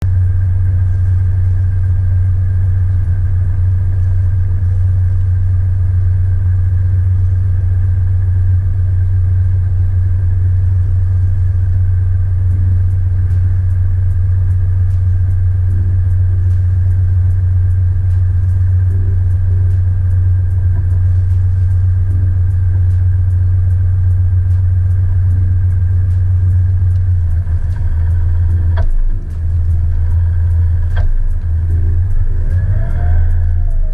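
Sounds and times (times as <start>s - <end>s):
boat engine droning: 0.0s - 33.9s.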